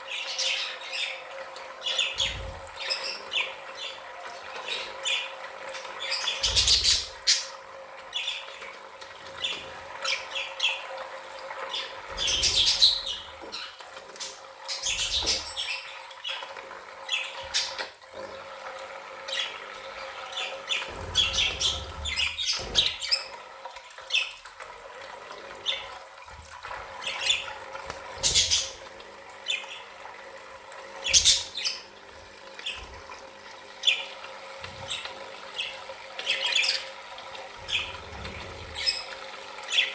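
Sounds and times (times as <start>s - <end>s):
budgerigars chattering and squawking: 1.8s - 8.5s, 11.7s - 16.4s, 17.1s - 17.9s, 19.3s - 23.3s, 27.0s - 28.8s, 31.0s - 31.9s, 34.8s - 36.9s, 37.6s - 39.9s.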